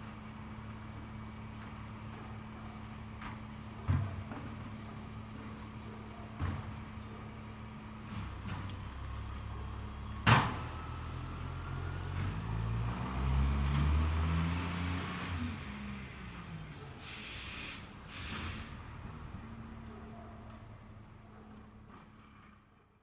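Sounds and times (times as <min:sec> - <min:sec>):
diesel engine revving: 0:08.2 - 0:16.3
high metallic squeal: 0:15.9 - 0:17.8.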